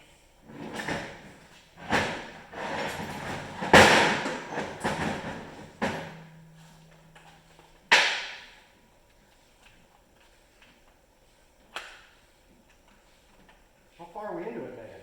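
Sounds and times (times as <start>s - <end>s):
metal engine parts clanking: 0.6s - 7.8s.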